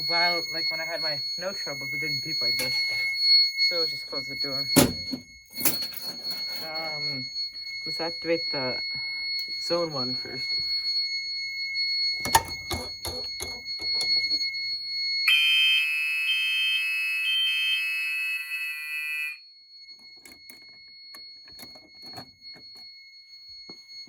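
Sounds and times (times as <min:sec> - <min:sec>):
steady high panel beep: 0:00.0 - 0:23.9
fire alarm horns: 0:00.0 - 0:24.0.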